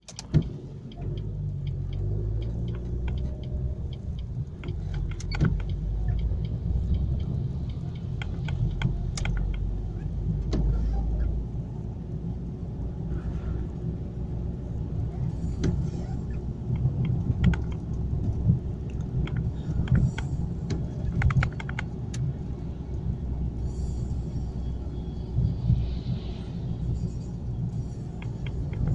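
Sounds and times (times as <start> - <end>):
road rumble inside car: 0.0 - 28.9
small clicks and rattles: 16.6 - 22.3.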